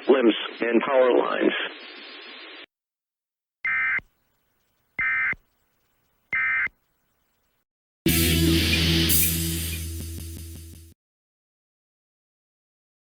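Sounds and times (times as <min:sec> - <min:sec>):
screechy digital data bursts: 0:03.7 - 0:04.0, 0:05.0 - 0:05.4, 0:06.4 - 0:06.7.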